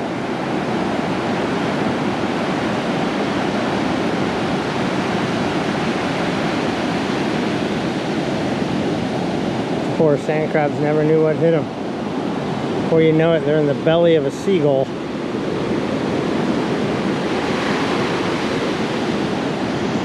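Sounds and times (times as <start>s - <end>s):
surf washing over sand: 0.0s - 20.0s.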